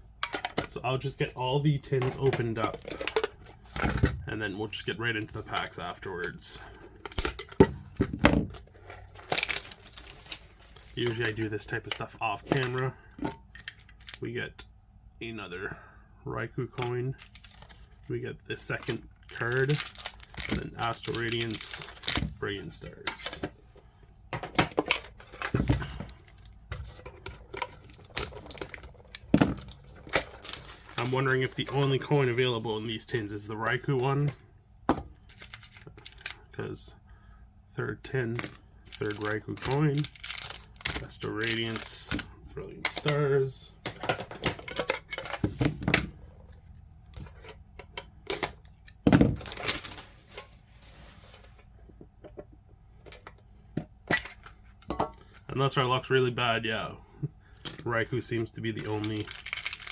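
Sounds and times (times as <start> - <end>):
metal tins clicking and clattering: 0.2 - 0.8, 2.0 - 4.1.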